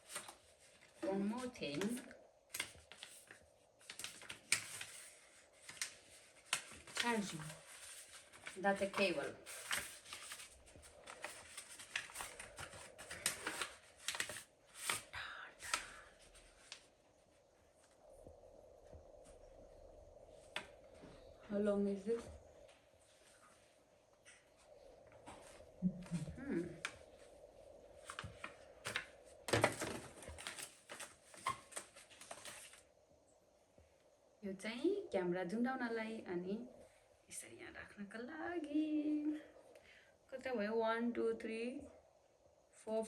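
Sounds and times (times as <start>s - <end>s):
packaging crinkling: 1.7s - 15.1s, 28.0s - 32.8s.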